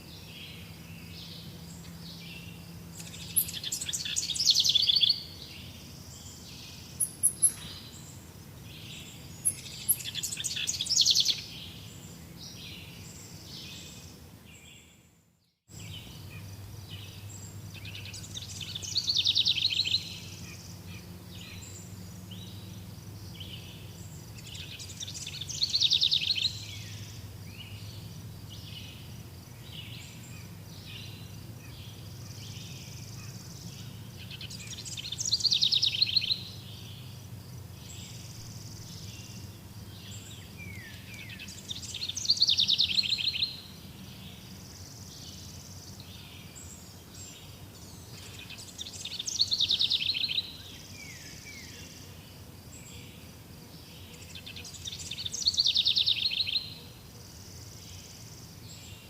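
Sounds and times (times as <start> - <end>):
birds chirping: 0.0 - 59.0
bird trilling song: 0.2 - 15.0, 15.7 - 52.0, 54.1 - 56.8
steady low hum: 15.7 - 49.6.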